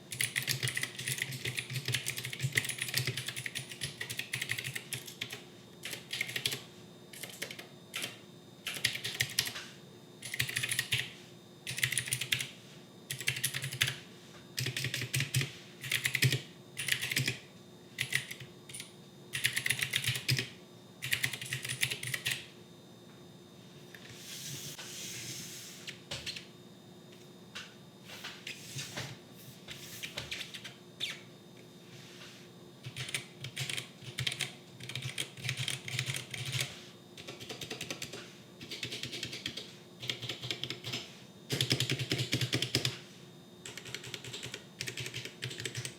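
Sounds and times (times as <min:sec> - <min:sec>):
mechanical keyboard typing: 0:00.1 - 0:06.6, 0:07.2 - 0:09.6, 0:10.2 - 0:11.1, 0:11.7 - 0:12.5, 0:13.1 - 0:14.0, 0:14.6 - 0:17.4, 0:18.0 - 0:22.4, 0:32.8 - 0:43.0, 0:43.6 - 0:45.9.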